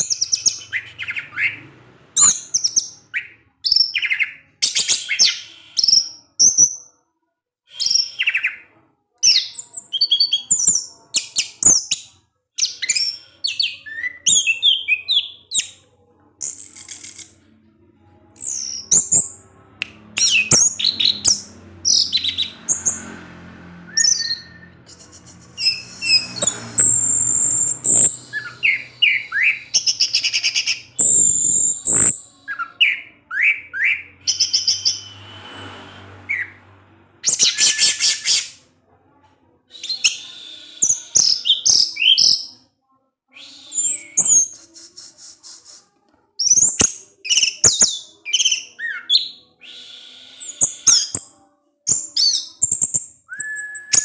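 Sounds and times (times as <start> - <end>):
thrush singing: 16.5 - 38.7.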